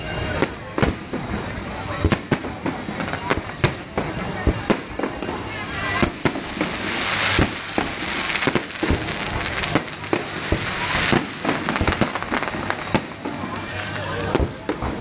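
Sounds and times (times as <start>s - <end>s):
crackling hiss: 0.0s - 15.0s
fireworks bursting: 0.0s - 15.0s.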